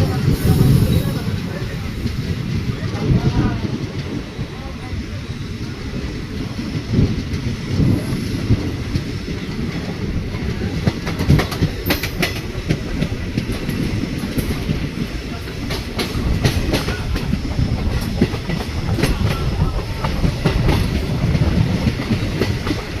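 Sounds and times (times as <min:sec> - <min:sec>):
train rumbling along track: 0:00.0 - 0:23.0
wheels clicking over rail joints: 0:08.5 - 0:23.0.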